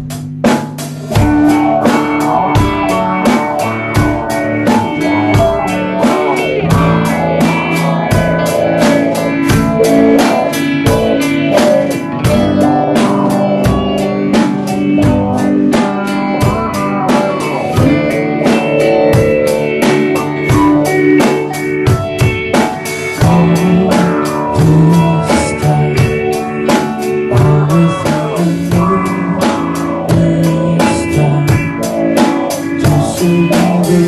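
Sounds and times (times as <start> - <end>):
drum kit beat: 0.0 - 34.0
rock band playing live: 0.0 - 34.0.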